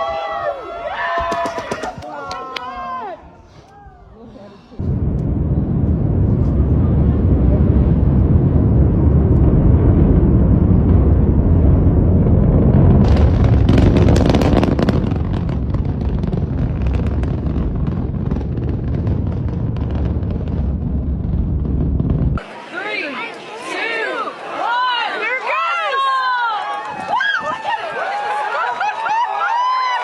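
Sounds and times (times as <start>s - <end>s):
sharp crackling: 4.8s - 22.4s
rocket launch rumble: 4.8s - 22.5s.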